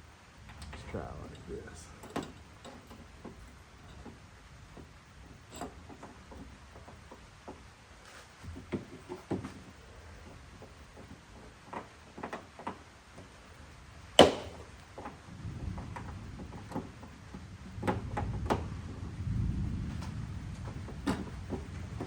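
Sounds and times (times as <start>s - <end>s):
low rumbling handling noise: 0.0s - 22.0s
sharp loud knock: 14.2s - 14.6s.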